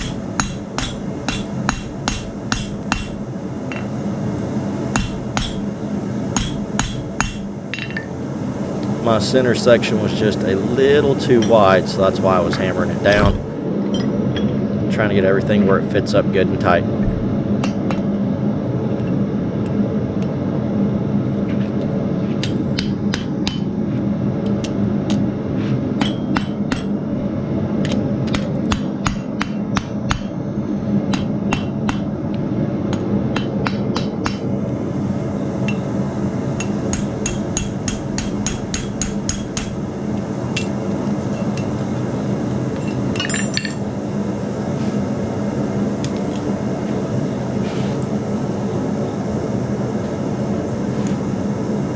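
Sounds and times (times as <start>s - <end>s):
hammer striking steel: 0.0s - 3.8s, 26.0s - 26.9s, 36.6s - 39.8s
low hum: 8.1s - 51.9s.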